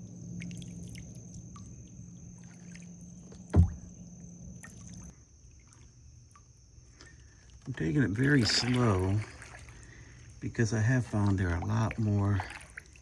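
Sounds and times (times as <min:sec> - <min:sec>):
water drips and splashes: 0:00.3 - 0:13.0
paddle strokes in water: 0:00.4 - 0:13.0.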